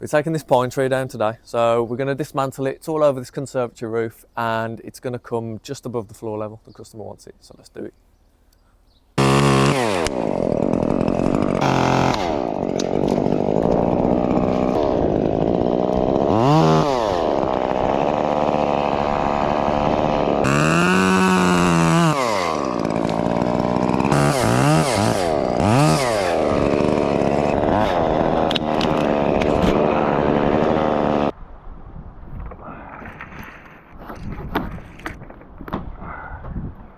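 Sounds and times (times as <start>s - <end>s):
chainsaw revving: 9.2s - 31.4s.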